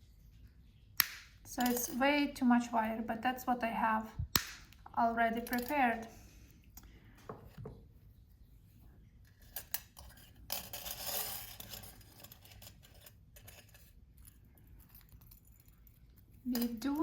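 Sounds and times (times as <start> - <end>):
metal wire and tools clinking: 1.4 - 2.0, 5.3 - 6.1, 9.2 - 17.0.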